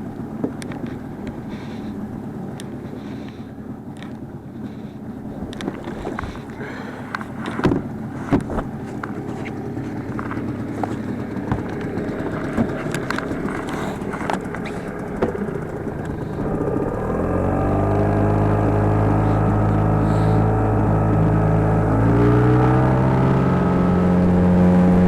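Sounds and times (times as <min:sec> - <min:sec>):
boat motor running: 0:00.0 - 0:25.0
knocks and rattles: 0:07.2 - 0:15.7.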